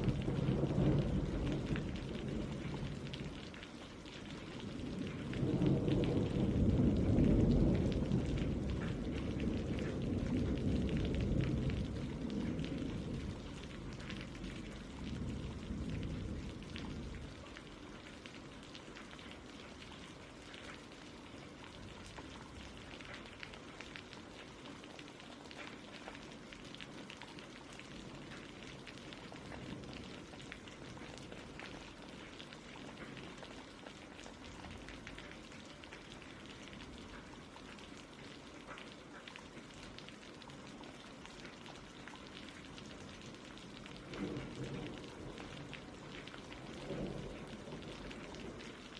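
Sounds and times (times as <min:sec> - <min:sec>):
steady rain falling: 0:00.0 - 0:48.9.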